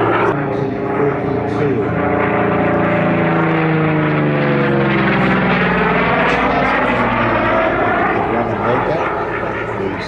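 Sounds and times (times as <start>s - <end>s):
propeller plane flying past: 0.0s - 10.0s.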